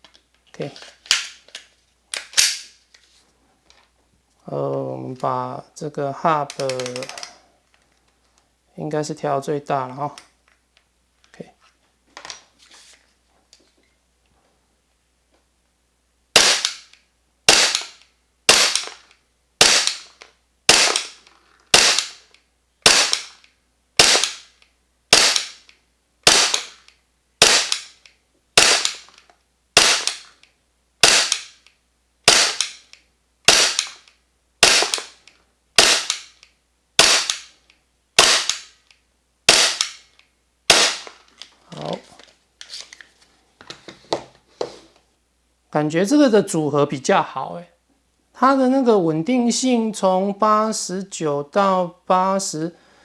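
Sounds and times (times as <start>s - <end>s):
pistol slide blowback: 2.2s - 2.7s, 16.4s - 19.0s, 19.6s - 22.2s, 22.8s - 23.4s, 24.0s - 24.5s, 25.1s - 28.0s, 28.6s - 29.1s, 29.8s - 30.3s, 31.0s - 31.6s, 32.3s - 32.9s, 33.5s - 35.2s, 35.8s - 36.3s, 37.0s - 37.5s, 38.2s - 38.8s, 39.5s - 40.1s, 40.7s - 41.2s
airsoft pistol firing: 16.4s - 23.4s, 24.0s - 28.0s, 28.6s - 29.2s, 29.8s - 30.3s, 31.0s - 31.6s, 32.3s - 32.9s, 33.5s - 35.2s, 35.8s - 36.4s, 37.0s - 37.6s, 38.2s - 38.8s, 39.5s - 40.1s, 40.7s - 41.2s.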